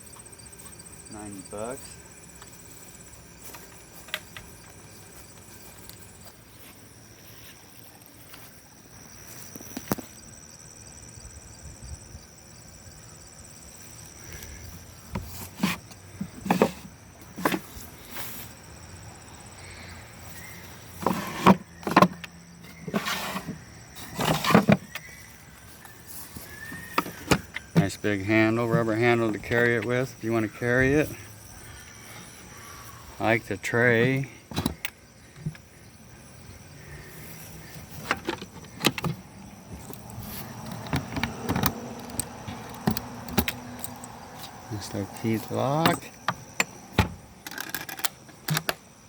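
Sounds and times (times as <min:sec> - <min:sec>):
insects chirring: 0:00.0 - 0:49.0
metal tool chest knocks and clunks: 0:15.1 - 0:17.7, 0:21.0 - 0:22.2, 0:22.8 - 0:25.0, 0:33.9 - 0:34.8, 0:37.8 - 0:40.0, 0:40.7 - 0:43.5, 0:45.6 - 0:47.3.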